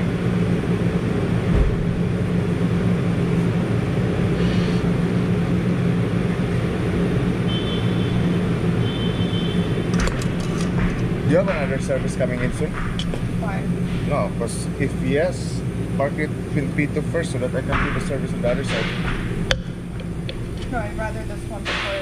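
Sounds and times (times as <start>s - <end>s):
low machinery hum: 0.0s - 22.0s
low thump: 1.5s - 2.0s.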